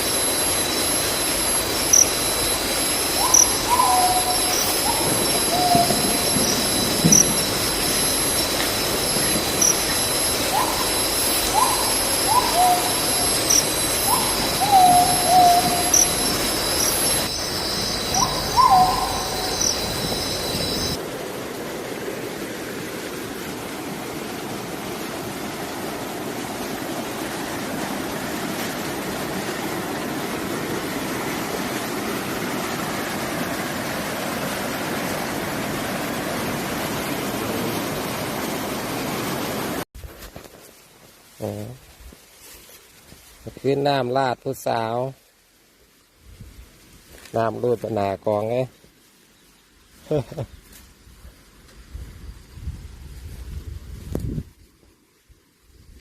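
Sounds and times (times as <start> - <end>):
insects buzzing: 0.0 - 21.0
rushing stream water: 0.0 - 39.9
short animal calls: 3.2 - 6.4.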